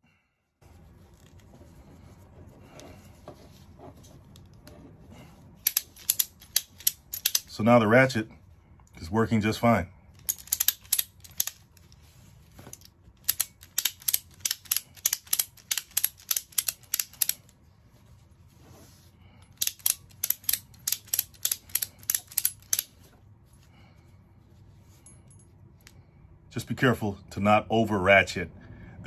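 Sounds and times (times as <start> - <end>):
ratchet strap clicking: 5.6 - 7.5, 10.1 - 17.6, 19.4 - 23.0.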